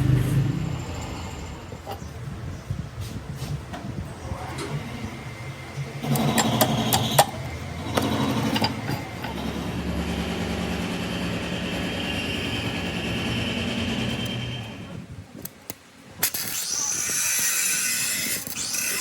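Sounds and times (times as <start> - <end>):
machine running with high whine: 3.9 - 15.1.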